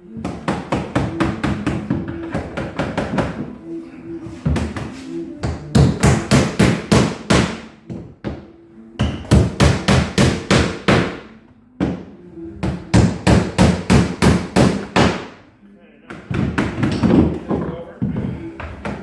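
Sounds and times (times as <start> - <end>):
hammer striking wood: 4.6 - 15.4.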